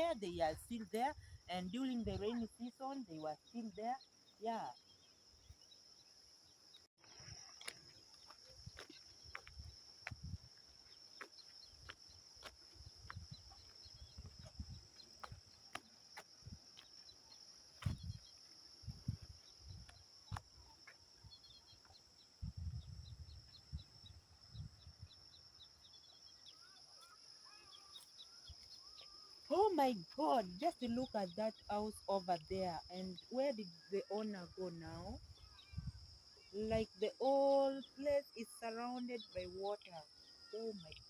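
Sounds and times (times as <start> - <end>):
insects droning: 0.0 - 41.0
bird chirps: 16.8 - 29.6.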